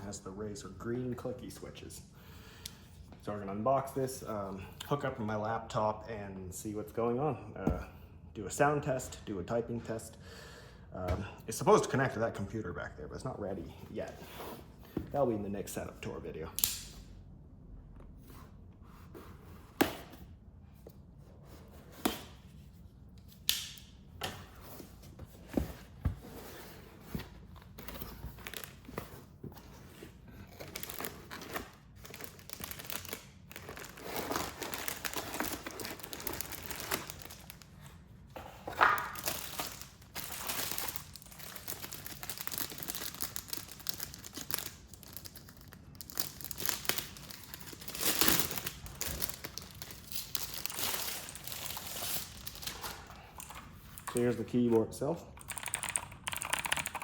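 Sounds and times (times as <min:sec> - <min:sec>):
packaging rustling and tearing: 0:27.6 - 0:29.2, 0:29.9 - 0:38.0, 0:38.8 - 0:54.1.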